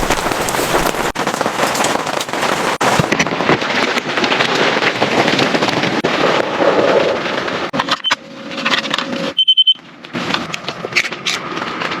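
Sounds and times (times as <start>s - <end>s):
rain pattering on tent: 0.0s - 7.8s, 9.8s - 12.0s
short high electronic beeps: 9.4s - 9.8s.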